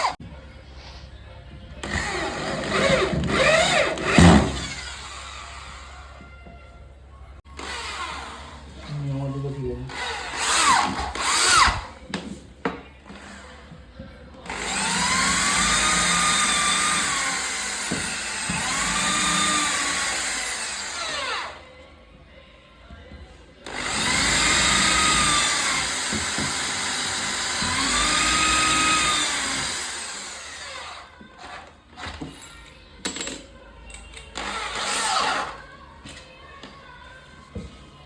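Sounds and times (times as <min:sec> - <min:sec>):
electric drill driving screws: 0:01.8 - 0:06.0, 0:07.6 - 0:08.6, 0:09.9 - 0:11.9, 0:14.5 - 0:21.6, 0:23.7 - 0:31.1, 0:34.4 - 0:35.6.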